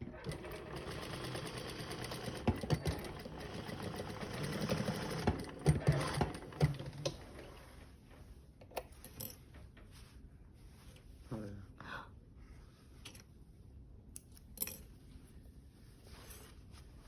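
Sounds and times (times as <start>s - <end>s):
sewing machine stitching: 0.0s - 7.6s.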